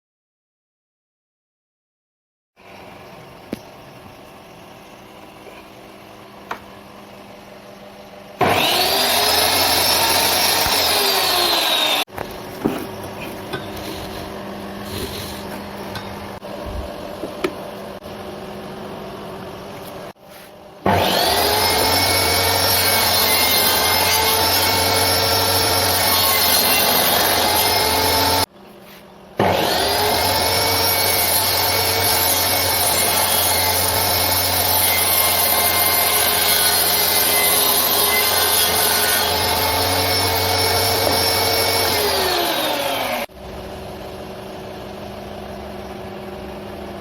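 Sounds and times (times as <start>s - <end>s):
table saw cutting wood: 8.4s - 16.5s, 20.3s - 28.5s, 29.4s - 43.3s.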